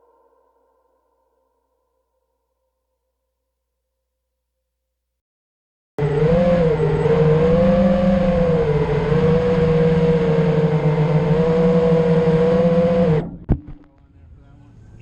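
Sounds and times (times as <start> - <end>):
drone motors whining: 6.0 - 13.8.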